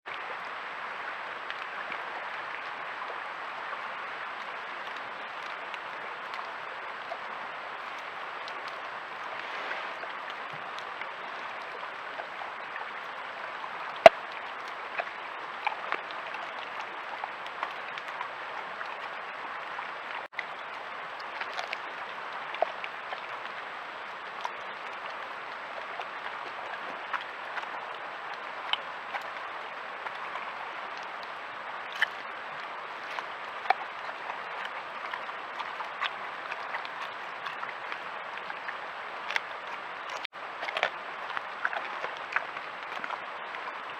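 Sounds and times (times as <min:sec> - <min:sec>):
steady hiss: 0:07.4 - 0:11.8.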